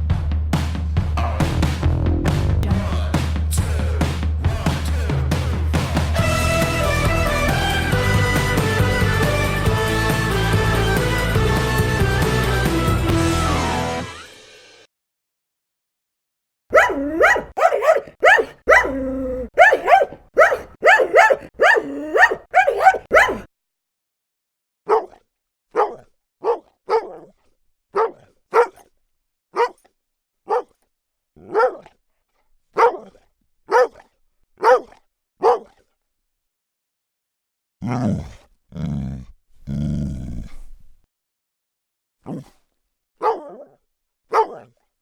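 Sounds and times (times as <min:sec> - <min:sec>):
dog barking: 0:16.7 - 0:23.5, 0:24.9 - 0:27.3, 0:28.0 - 0:28.9, 0:29.6 - 0:29.9, 0:30.5 - 0:30.8, 0:31.4 - 0:32.0, 0:32.8 - 0:34.0, 0:34.6 - 0:35.8, 0:43.2 - 0:44.8.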